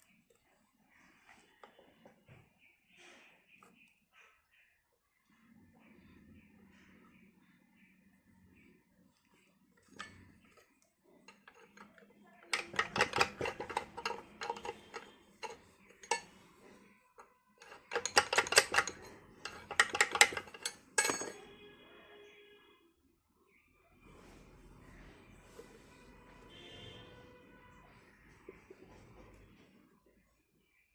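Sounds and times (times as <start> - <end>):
metal objects clinking: 11.3 - 16.4, 17.6 - 21.5
metal ringing: 11.3 - 16.4, 17.6 - 21.4.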